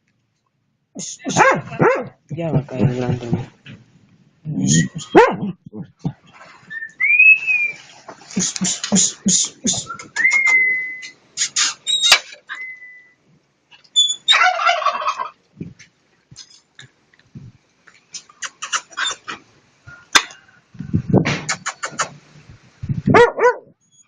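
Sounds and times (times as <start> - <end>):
dog yelping: 1.3 - 2.1, 4.8 - 5.5, 14.0 - 15.3, 18.7 - 19.4, 23.1 - 24.0
scuffling and rustling: 1.4 - 4.0
dog whining: 18.8 - 19.4.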